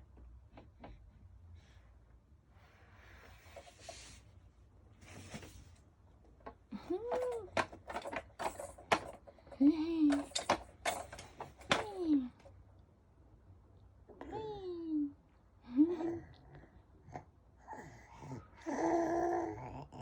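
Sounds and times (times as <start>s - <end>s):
clicks and knocks of handling: 6.2s - 12.5s.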